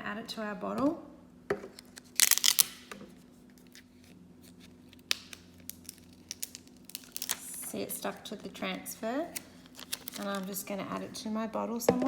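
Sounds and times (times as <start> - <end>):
crackly tape peeling: 1.7 - 10.6.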